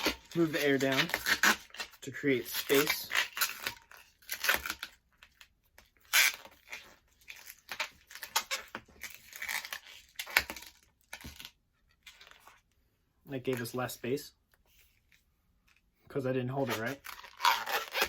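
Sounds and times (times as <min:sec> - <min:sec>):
balloon rubbing and squeaking: 0:00.0 - 0:04.8, 0:06.0 - 0:10.7, 0:16.6 - 0:18.0.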